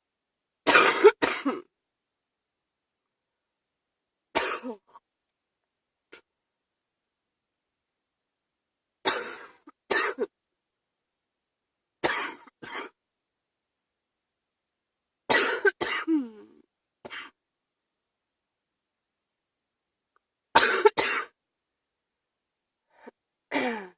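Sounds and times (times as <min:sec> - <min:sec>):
person coughing: 0:00.7 - 0:01.7, 0:04.4 - 0:05.0, 0:09.1 - 0:10.3, 0:12.0 - 0:13.0, 0:15.3 - 0:16.5, 0:20.6 - 0:21.4, 0:23.5 - 0:23.9.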